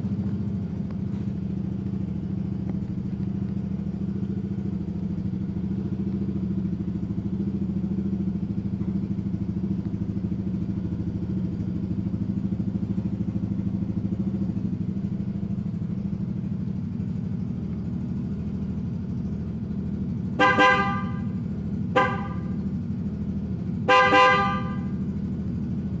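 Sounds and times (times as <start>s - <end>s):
scooter engine idling: 0.0s - 26.0s
horn blasts: 20.4s - 22.6s, 23.8s - 25.0s.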